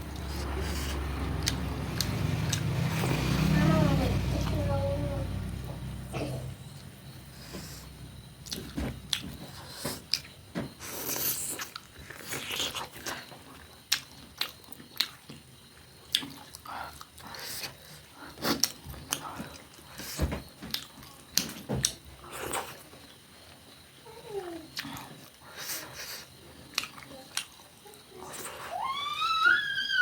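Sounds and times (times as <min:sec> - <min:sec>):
person biting and chewing food: 0:11.0 - 0:13.2.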